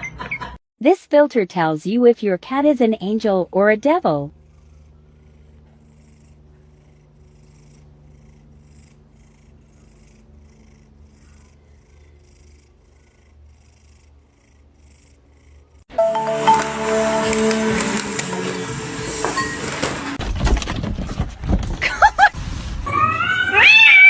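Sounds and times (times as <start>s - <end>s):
cat purring: 2.6s - 15.9s.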